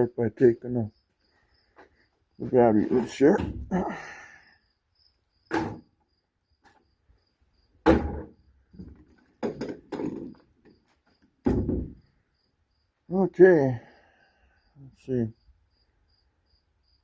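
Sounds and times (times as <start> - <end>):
cricket chirping: 0.0 - 17.0.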